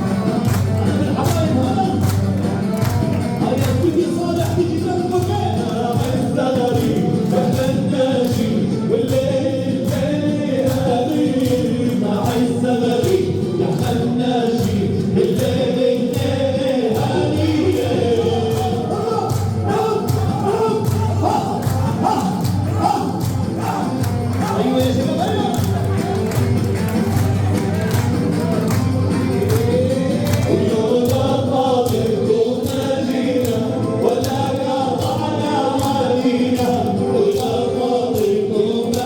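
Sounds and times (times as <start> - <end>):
men singing in chorus: 0.0 - 39.0
steady drum beat: 0.0 - 39.0.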